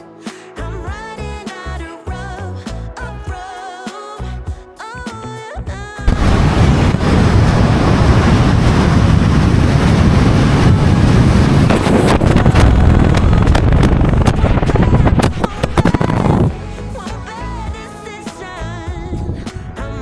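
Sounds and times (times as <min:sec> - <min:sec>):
wind buffeting microphone: 0:06.1 - 0:16.6.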